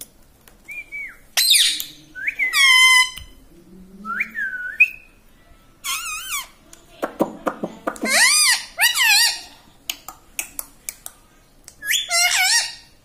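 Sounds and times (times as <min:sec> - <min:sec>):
parrot squawk: 0:08.0 - 0:09.5, 0:11.9 - 0:12.9.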